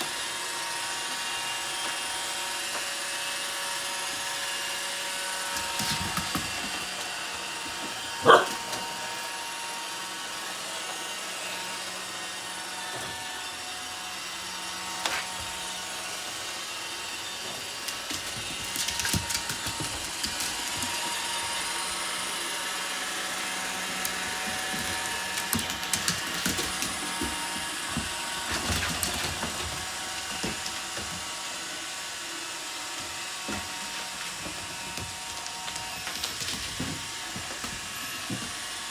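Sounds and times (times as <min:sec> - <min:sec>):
robot vacuum whirring: 0:00.0 - 0:38.9
dog calling loudly: 0:08.2 - 0:08.6
vacuum brushes clicking: 0:17.8 - 0:21.9, 0:23.8 - 0:27.8.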